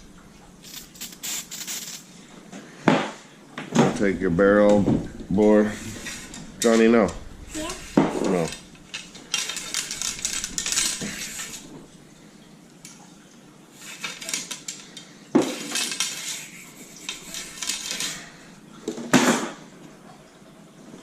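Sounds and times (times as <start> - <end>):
hissing noise: 0.0 - 2.2, 4.0 - 12.1
metal clinking and scraping: 4.0 - 12.0, 15.6 - 18.3.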